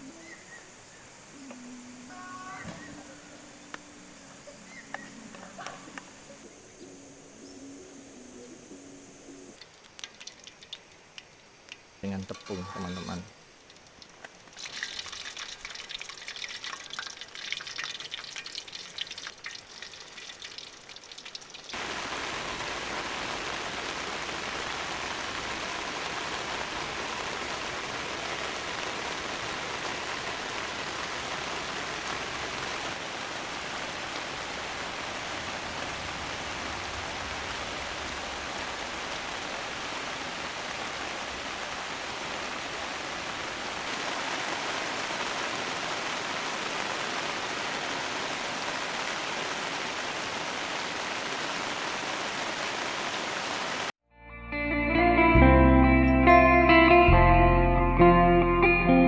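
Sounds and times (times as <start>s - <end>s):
crackling hiss: 0.0s - 54.0s
heavy rain: 8.1s - 54.0s.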